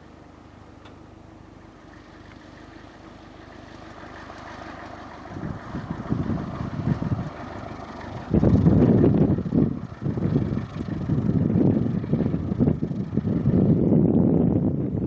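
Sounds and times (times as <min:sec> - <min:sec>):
low steady rumble: 0:00.0 - 0:15.0
wind buffeting microphone: 0:05.2 - 0:15.0.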